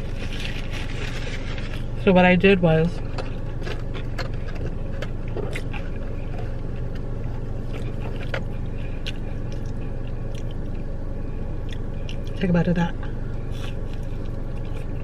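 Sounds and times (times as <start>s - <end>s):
person chewing crunchy food: 0.0s - 2.0s, 3.0s - 12.4s, 13.2s - 15.0s
car interior hum: 0.0s - 15.0s.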